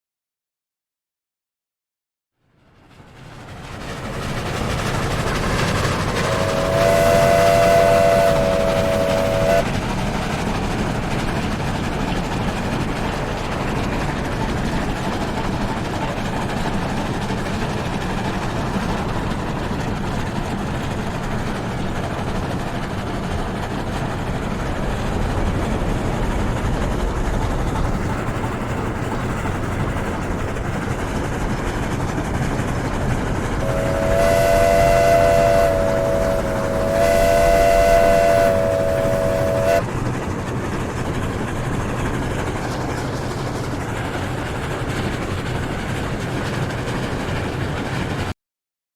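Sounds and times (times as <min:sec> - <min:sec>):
locomotive rumble and clatter: 0:02.6 - 0:48.3
steam locomotive whistle: 0:05.3 - 0:09.7, 0:33.6 - 0:39.8.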